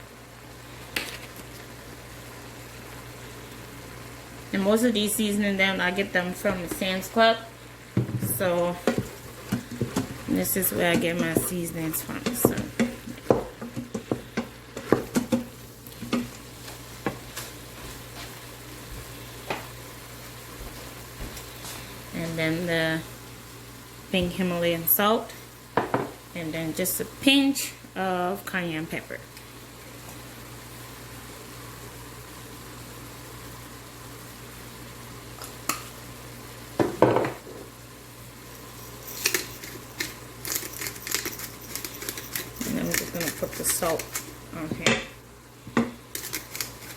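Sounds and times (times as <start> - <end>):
low steady hum: 0.0 - 20.2
meat sizzling in a pot: 0.0 - 46.9
utensils clinking against pot: 38.8 - 44.3.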